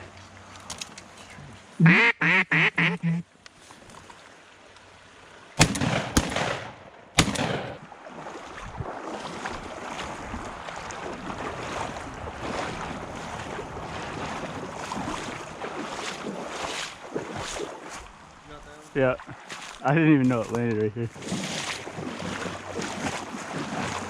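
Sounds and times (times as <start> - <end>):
shotgun blast: 5.6 - 7.8.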